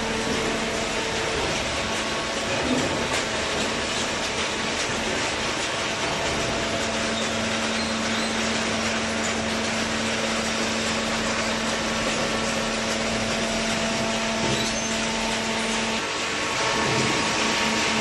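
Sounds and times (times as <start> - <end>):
hydraulic baler running: 0.0 - 18.0.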